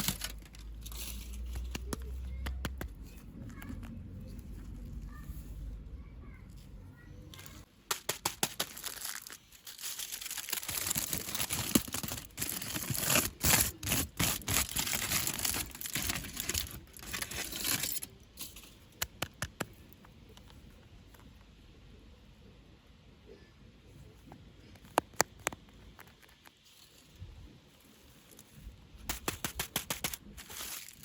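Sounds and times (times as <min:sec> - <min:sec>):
plastic packaging crinkling and tearing: 0:00.0 - 0:02.0, 0:07.9 - 0:18.2, 0:29.1 - 0:31.0.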